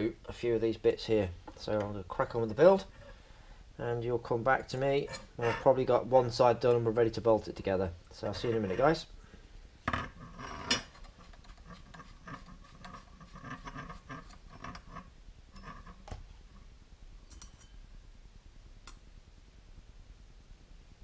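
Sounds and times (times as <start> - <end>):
small metal parts clinking: 17.3 - 17.8.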